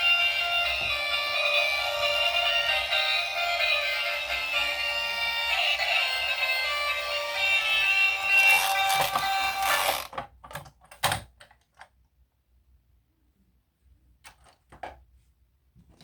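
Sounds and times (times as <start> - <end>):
background music: 0.0 - 9.8.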